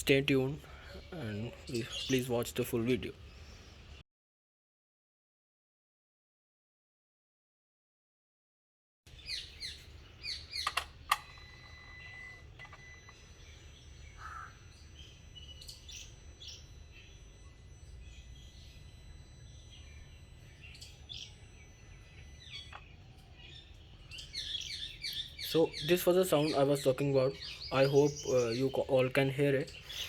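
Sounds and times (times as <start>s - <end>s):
birds chirping: 0.0s - 4.0s, 9.1s - 30.0s
throttle body click: 10.6s - 11.4s
high-pitched electronic whine: 11.2s - 24.5s.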